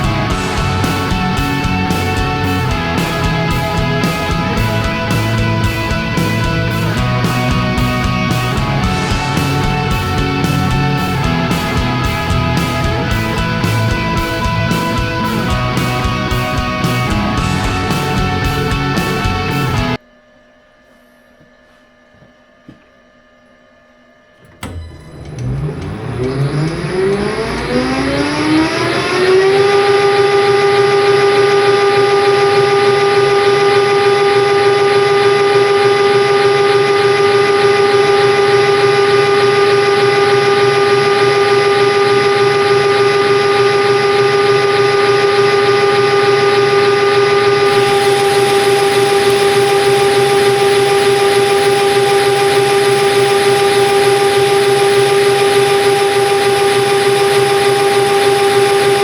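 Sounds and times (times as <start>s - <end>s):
lathe motor whine: 24.4s - 59.0s.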